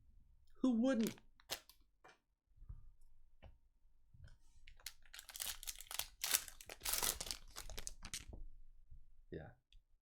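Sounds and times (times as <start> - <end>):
wrapper crinkling and tearing: 1.0 - 1.8, 4.8 - 8.4.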